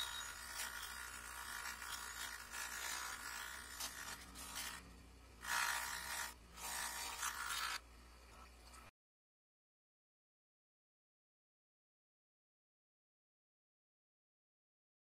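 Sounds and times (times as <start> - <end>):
small electric tool working: 0.0 - 7.8.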